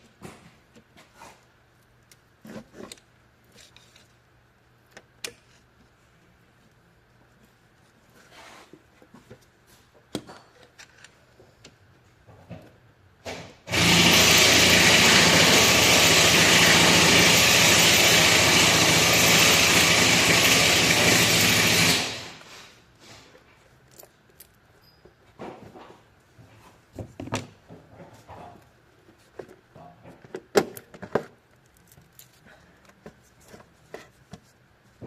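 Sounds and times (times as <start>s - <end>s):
power tool motor running: 13.7s - 22.4s.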